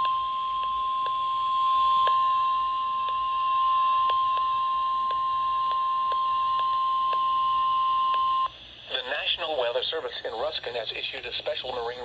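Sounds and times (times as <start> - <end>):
steady warning beep: 0.0 - 8.6
radio hiss: 8.2 - 12.0.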